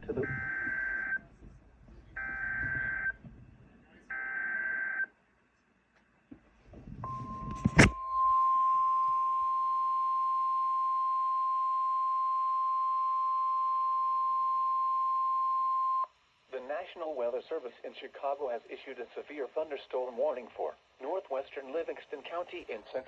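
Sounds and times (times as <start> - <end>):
steady high alarm beep: 7.0 - 16.1.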